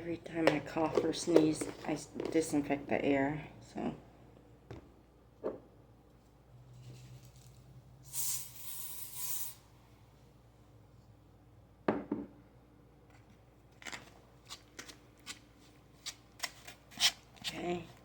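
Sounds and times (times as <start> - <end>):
aerosol spray hissing: 8.1 - 9.6.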